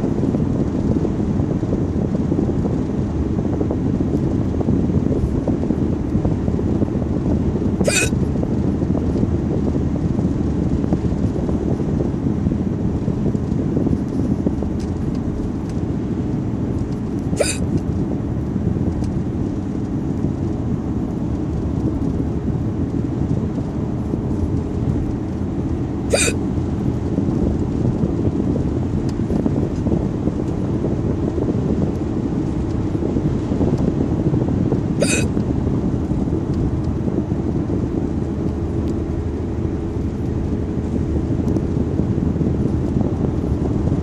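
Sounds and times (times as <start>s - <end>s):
steady low rumble: 0.0s - 44.0s
person hiccupping: 7.8s - 8.2s, 17.4s - 17.7s, 26.1s - 26.4s, 35.0s - 35.3s.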